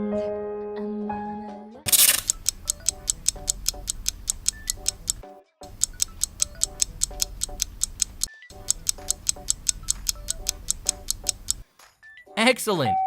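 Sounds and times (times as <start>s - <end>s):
fast clock ticking: 1.9s - 11.6s.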